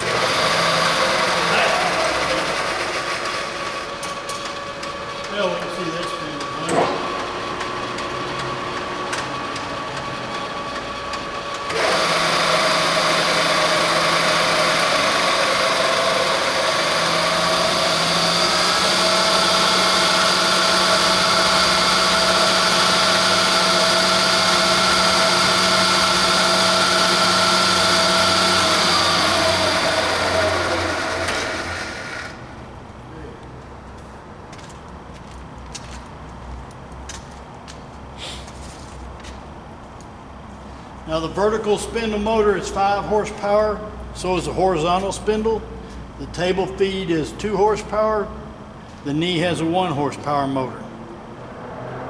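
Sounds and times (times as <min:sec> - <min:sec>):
milling machine motor whine: 0:00.0 - 0:32.6.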